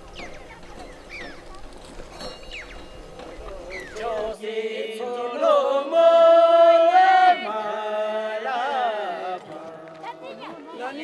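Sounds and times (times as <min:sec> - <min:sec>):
person singing chant-like melody: 0:03.4 - 0:11.0.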